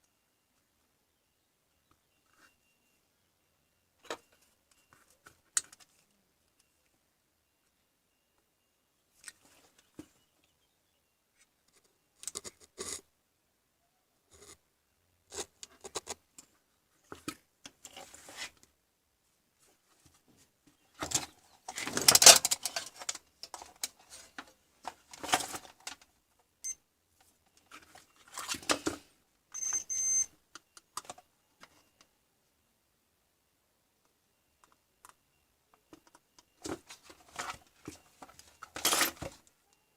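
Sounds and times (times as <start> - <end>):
small parts and tools clattering: 20.8 - 26.1, 27.4 - 32.0, 35.8 - 39.5.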